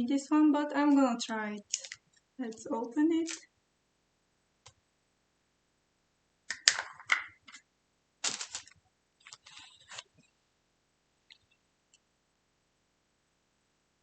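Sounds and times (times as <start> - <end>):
plastic crackling: 1.6 - 2.6, 3.2 - 3.5, 8.2 - 10.3.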